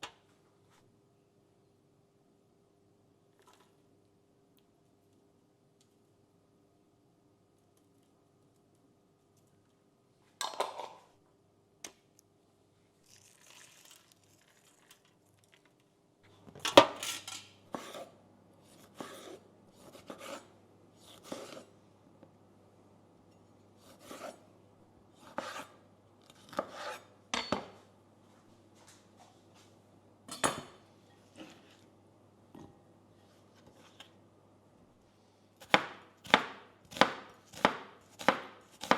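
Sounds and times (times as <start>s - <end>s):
dishes and cutlery clinking: 16.6s - 18.0s, 27.3s - 27.8s.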